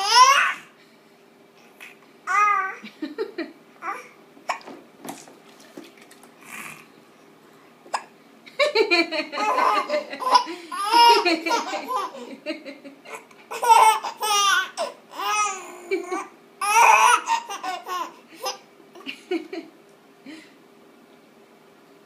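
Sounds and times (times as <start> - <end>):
baby giggling: 8.6 - 12.4, 13.1 - 19.2.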